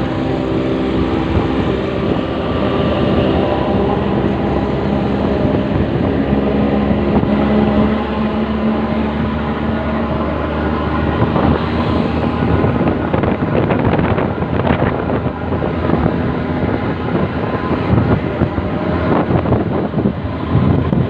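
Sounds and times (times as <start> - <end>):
truck diesel engine rumbling: 0.0 - 21.0.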